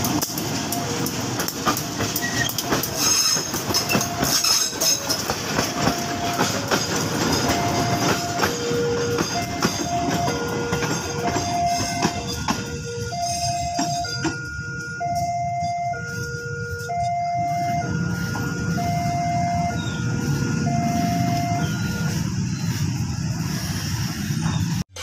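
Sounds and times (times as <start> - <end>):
train wheels clattering: 0.0 - 15.2
two-note warning tone: 7.5 - 22.2.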